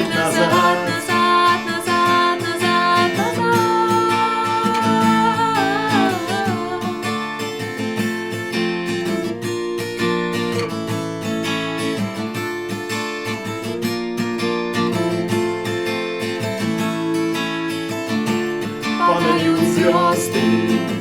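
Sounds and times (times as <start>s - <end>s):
person singing with vibrato: 0.0s - 7.3s, 19.0s - 21.0s
acoustic guitar strumming: 0.0s - 21.0s.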